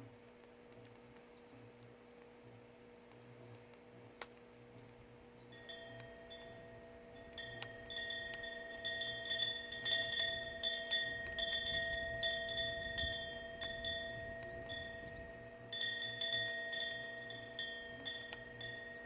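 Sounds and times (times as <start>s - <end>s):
metal chimes ringing: 5.4s - 19.0s.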